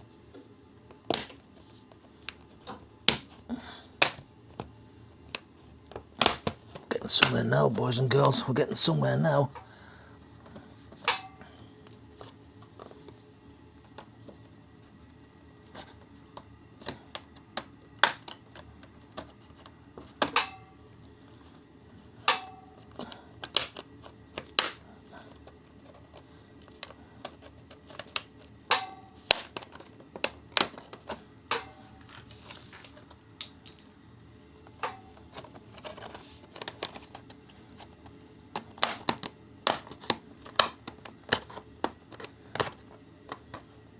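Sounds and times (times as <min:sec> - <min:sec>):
plastic case clicks and snaps: 0:24.4 - 0:24.8, 0:38.6 - 0:43.4.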